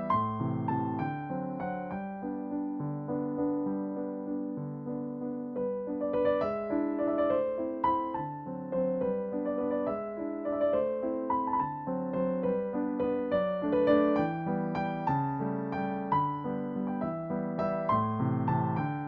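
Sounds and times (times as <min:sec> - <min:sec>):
calm piano music: 0:00.0 - 0:19.0.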